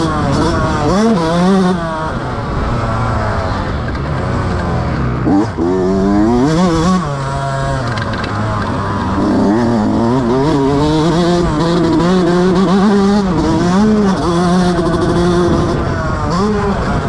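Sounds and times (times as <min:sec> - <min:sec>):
motocross bike engine revving: 0:00.0 - 0:17.0.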